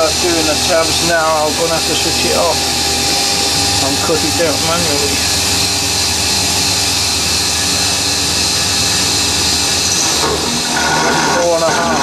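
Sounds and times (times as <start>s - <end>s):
milling cutter cutting: 0.0s - 12.0s
milling machine spindle motor whining: 0.0s - 12.0s.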